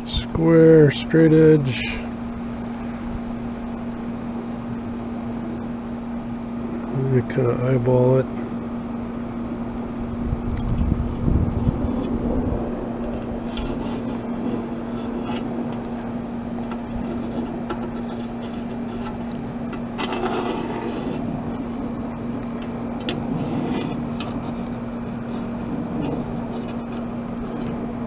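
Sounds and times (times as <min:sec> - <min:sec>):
machine hum: 0:00.0 - 0:28.0.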